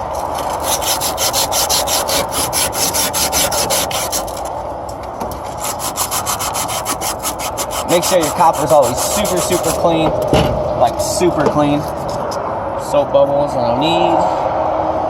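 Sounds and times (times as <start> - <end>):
scrubbing copper tubing: 0.0 - 4.6, 5.4 - 10.0, 10.8 - 12.4.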